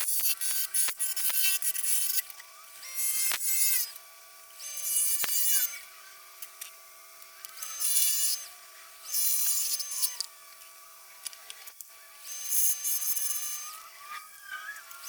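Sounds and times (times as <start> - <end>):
wood lathe whine: 0.0 - 15.0
gouge cutting wood: 4.7 - 5.8.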